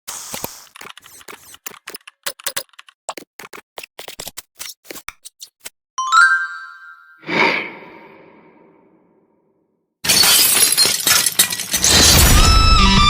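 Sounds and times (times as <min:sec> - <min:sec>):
rapid sharp clicks: 0:00.1 - 0:04.5
bright ringing chime: 0:06.0 - 0:07.2.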